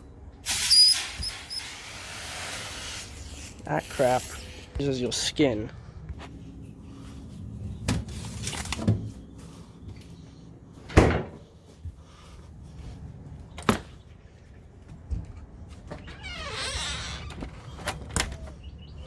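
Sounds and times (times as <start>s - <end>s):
low steady hum: 4.2s - 16.1s.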